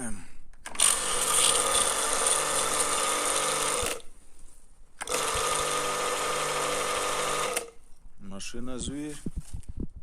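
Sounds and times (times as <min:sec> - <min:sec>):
pressure washer motor humming: 0:05.0 - 0:07.7.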